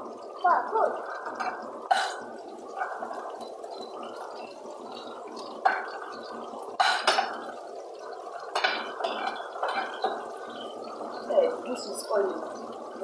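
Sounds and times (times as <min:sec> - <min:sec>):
kitchenware clattering: 0:01.2 - 0:02.2, 0:02.8 - 0:07.6, 0:08.4 - 0:10.8.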